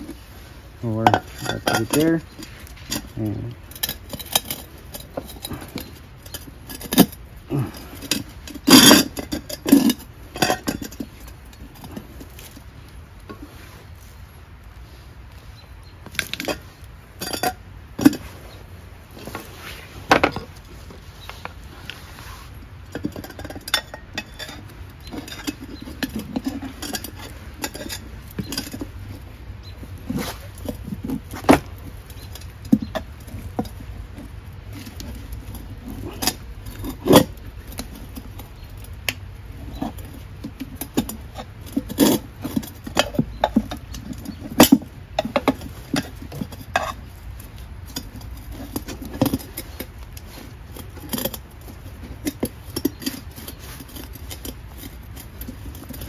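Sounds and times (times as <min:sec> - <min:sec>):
metal tools knocking on wheel: 0:00.9 - 0:12.4.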